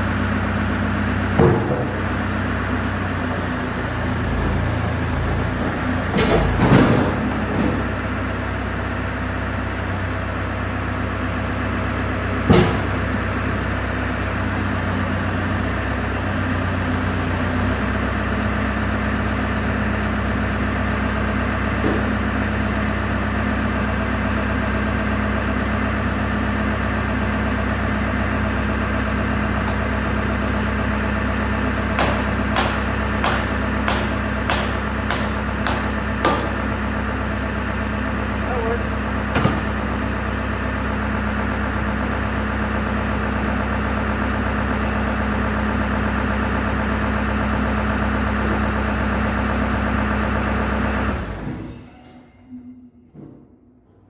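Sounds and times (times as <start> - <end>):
diesel engine idling: 0.0 - 51.5
sharp hammer taps: 32.0 - 36.5
metallic knocks: 32.0 - 36.6, 39.4 - 39.9.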